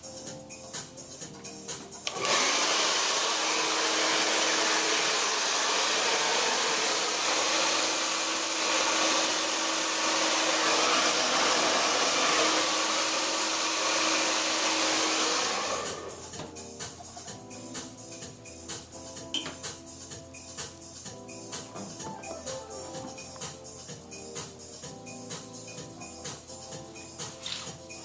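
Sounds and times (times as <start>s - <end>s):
background music: 0.0s - 28.0s
blow dryer running: 2.0s - 16.6s.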